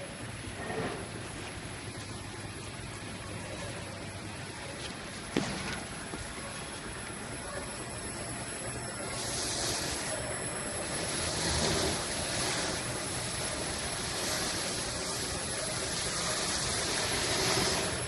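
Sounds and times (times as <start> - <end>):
sanding machine humming and grinding: 10.9 - 18.0.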